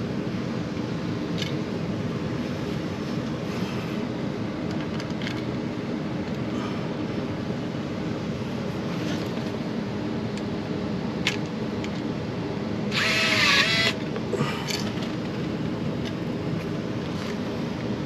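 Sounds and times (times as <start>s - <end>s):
steady low hum: 0.0s - 18.0s
power drill whirring: 12.9s - 14.0s.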